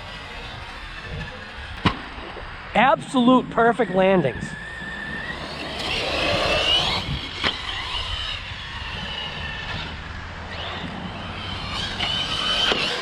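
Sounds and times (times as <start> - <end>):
electric motor whining: 3.8 - 13.0.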